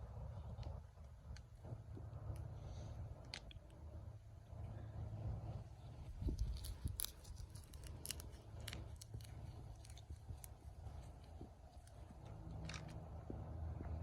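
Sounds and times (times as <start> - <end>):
low steady rumble: 0.0 - 14.0
scissors snipping stems: 6.2 - 10.6.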